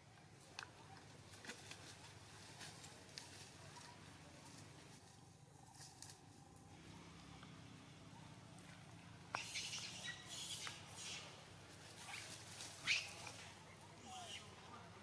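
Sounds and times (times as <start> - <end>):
high-pitched animal chirps and squeaks: 9.4 - 11.2.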